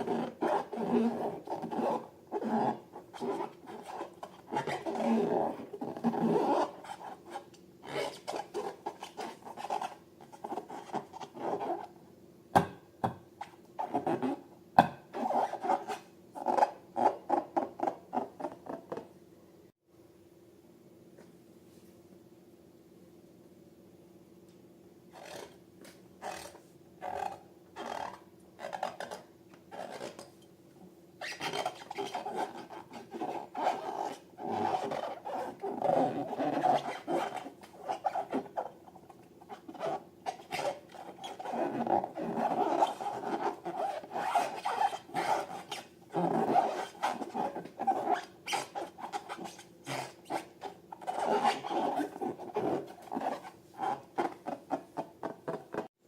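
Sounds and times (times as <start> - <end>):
rubber balloons squeaking: 0.0 - 11.9, 13.4 - 14.5, 15.2 - 18.7, 26.2 - 30.2, 31.2 - 55.9.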